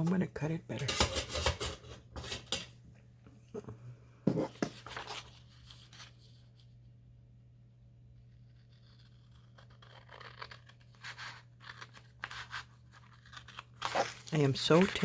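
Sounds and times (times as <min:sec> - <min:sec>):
paper rustling: 0:04.5 - 0:06.7, 0:09.8 - 0:15.0
scissors snipping paper: 0:08.4 - 0:15.0.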